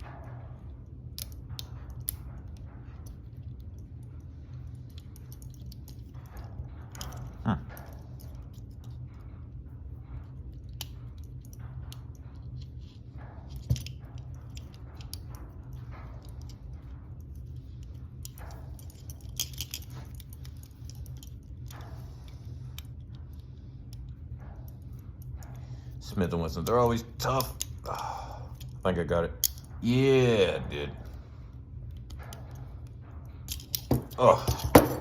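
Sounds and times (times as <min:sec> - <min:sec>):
low hum: 0:00.0 - 0:35.0
lock pick clicking and scraping: 0:01.1 - 0:09.0, 0:10.2 - 0:25.6, 0:33.5 - 0:35.0
handcuff chains clinking: 0:04.7 - 0:09.0, 0:13.5 - 0:22.0, 0:33.5 - 0:35.0.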